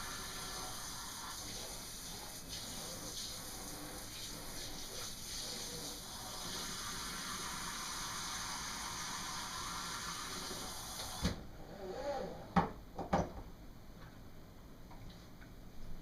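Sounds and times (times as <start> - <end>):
tap water running: 0.0 - 11.4.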